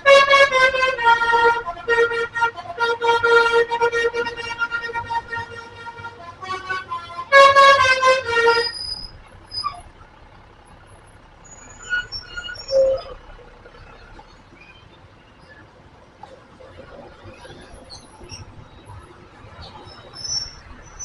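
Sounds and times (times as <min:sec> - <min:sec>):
bus musical horn tune: 0:00.0 - 0:09.8.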